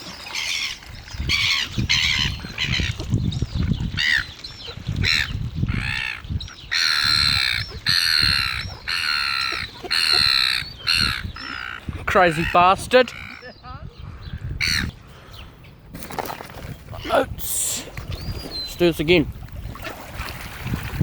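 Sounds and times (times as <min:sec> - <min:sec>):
gulls squawking: 0:00.2 - 0:15.3.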